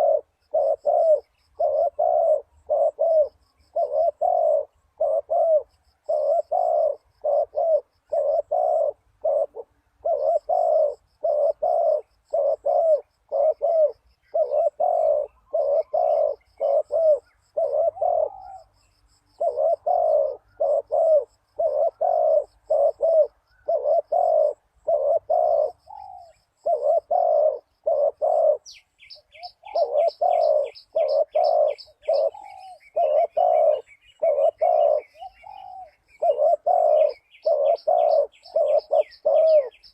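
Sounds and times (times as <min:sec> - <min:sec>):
dove cooing: 0:00.0 - 0:39.9
faint high bird chirps: 0:00.0 - 0:39.9.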